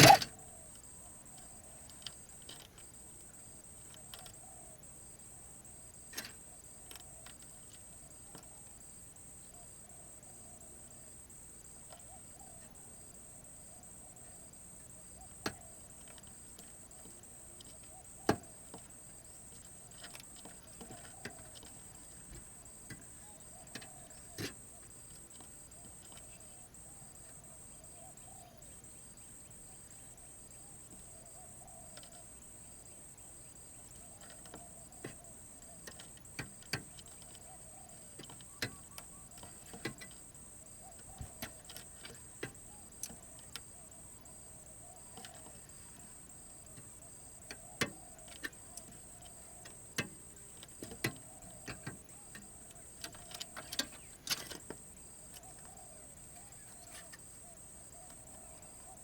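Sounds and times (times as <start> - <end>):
dove cooing: 0.0 - 2.6, 4.0 - 4.9, 11.9 - 12.9, 13.8 - 16.4, 19.7 - 28.8, 29.6 - 33.0, 33.7 - 59.0
high insect whine: 0.0 - 59.0.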